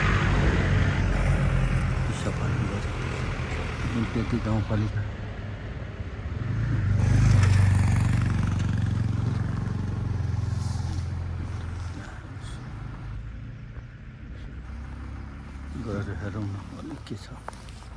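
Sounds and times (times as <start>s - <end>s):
vehicle engine passing: 0.0s - 17.9s.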